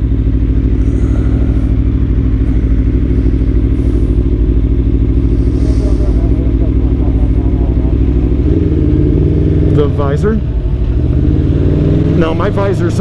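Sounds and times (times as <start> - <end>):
motorcycle engine cruising: 0.0 - 13.0.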